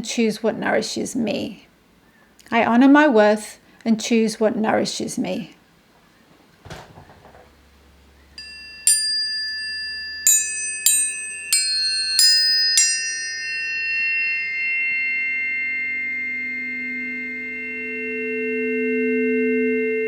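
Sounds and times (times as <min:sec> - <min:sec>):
tuning forks ringing: 0:08.2 - 0:20.0.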